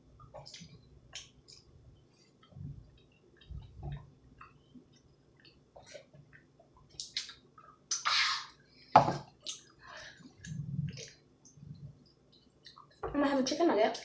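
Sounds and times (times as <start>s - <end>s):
chewing and mouth clicks: 4.4s - 8.0s, 12.0s - 13.0s.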